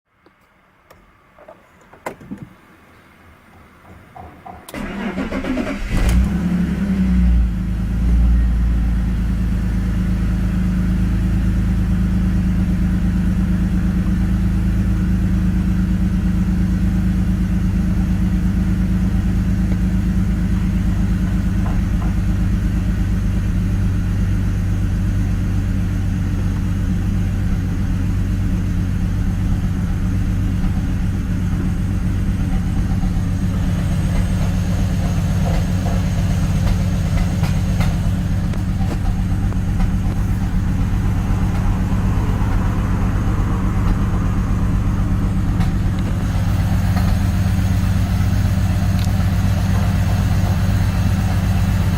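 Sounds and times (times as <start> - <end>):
car engine idling roughly: 7.4 - 51.9.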